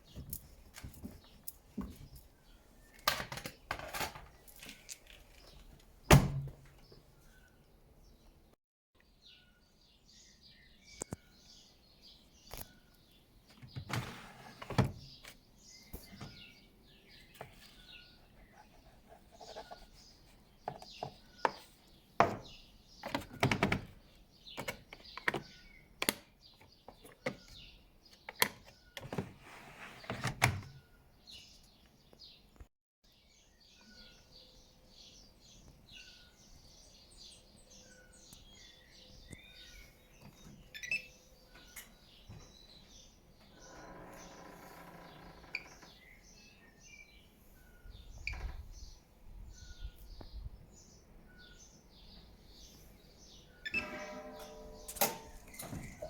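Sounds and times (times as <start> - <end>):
bird chirps: 33.2 - 56.0.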